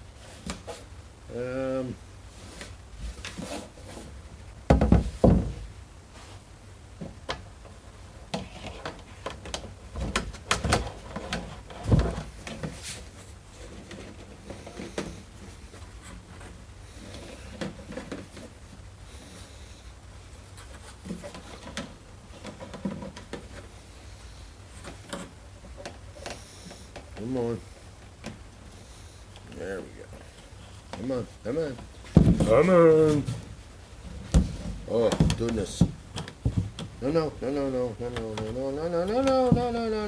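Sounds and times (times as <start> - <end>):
heavy knocks: 4.7 - 5.7, 32.0 - 32.9, 34.2 - 37.0.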